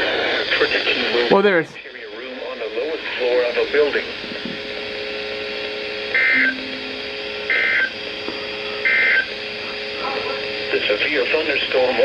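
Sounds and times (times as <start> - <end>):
buzzing digital data tones: 6.2 - 7.8.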